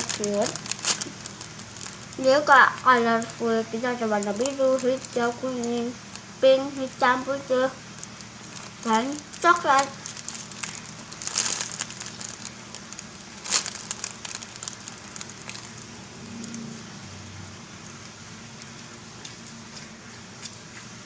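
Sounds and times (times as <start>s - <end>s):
crinkling handling noise: 0.0s - 16.7s
low hum: 0.0s - 20.4s.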